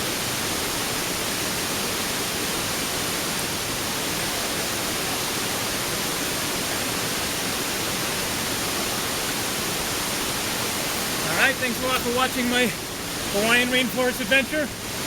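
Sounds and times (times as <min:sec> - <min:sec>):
waterfall rushing into pool: 0:00.0 - 0:15.0.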